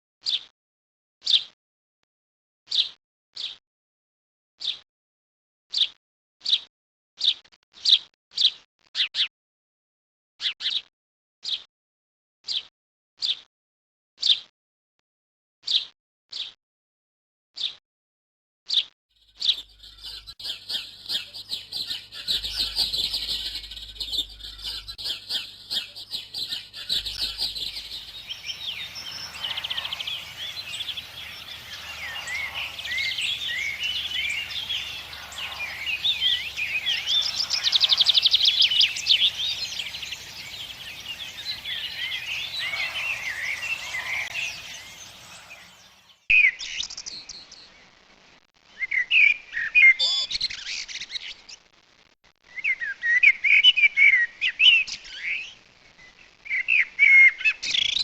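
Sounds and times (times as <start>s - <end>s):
high repeated bird chirps: 18.7s - 47.7s, 48.8s - 51.0s
bird warbling song: 19.2s - 47.8s.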